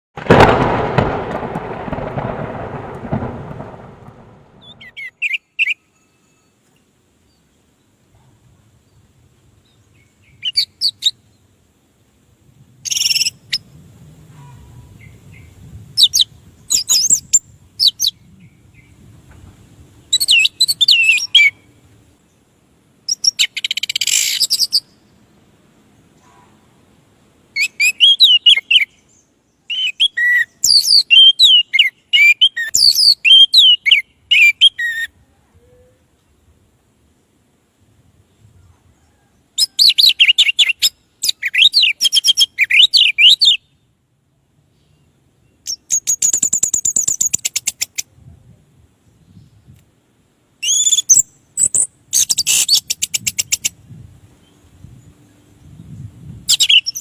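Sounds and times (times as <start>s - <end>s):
loud rushing noise: 0.2s - 4.9s.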